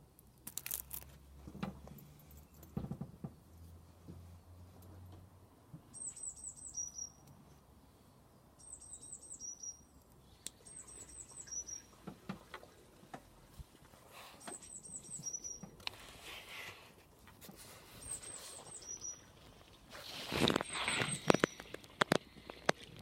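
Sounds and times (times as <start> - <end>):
songbird singing: 5.8 - 7.7, 8.3 - 12.8, 14.3 - 16.0, 17.9 - 19.7, 20.4 - 22.8
handling clicks and rustles: 19.8 - 23.0.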